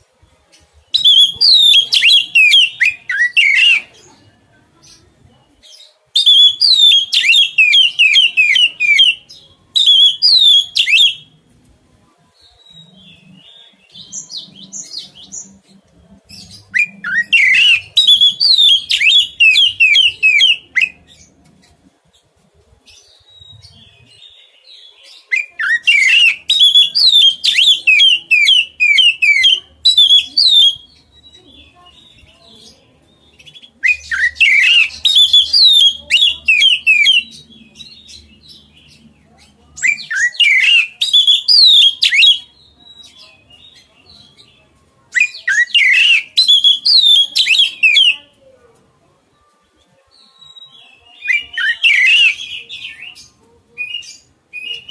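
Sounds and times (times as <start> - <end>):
bird singing: 0.9 - 4.1, 6.2 - 11.3, 16.4 - 21.4, 25.4 - 39.2, 39.8 - 44.6, 45.2 - 48.3, 50.3 - 54.9.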